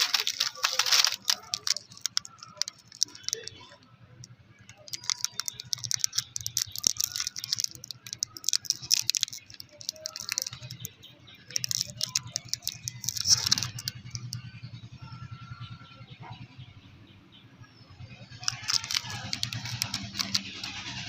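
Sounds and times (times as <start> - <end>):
plastic wrappers crinkling: 0.0 - 3.8, 4.6 - 14.4, 18.3 - 21.0
sweets rattling together: 0.0 - 3.8, 4.7 - 14.5, 18.3 - 21.0.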